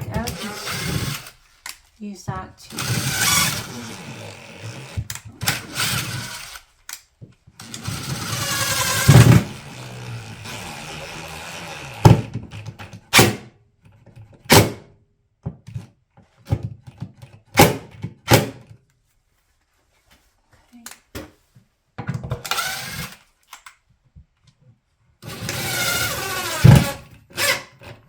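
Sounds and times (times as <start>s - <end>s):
cordless drill whine: 0.2s - 1.4s, 2.7s - 6.7s, 7.6s - 12.3s, 22.5s - 23.2s, 25.2s - 27.8s
knocks and clicks of wood and tools: 12.0s - 18.8s, 20.9s - 22.7s.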